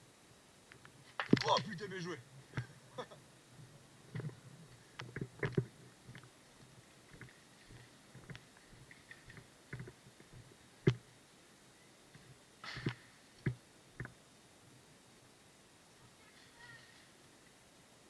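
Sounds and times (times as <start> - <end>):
sharp clicks and knocks: 5.0 - 6.3, 7.1 - 11.0.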